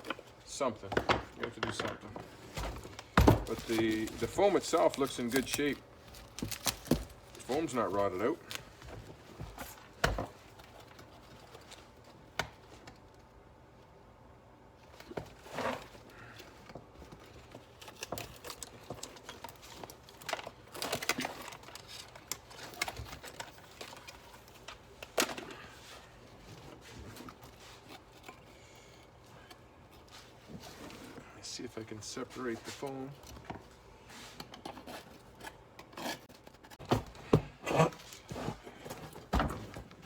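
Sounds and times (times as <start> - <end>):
foam rustling and crinkling: 1.5 - 12.2.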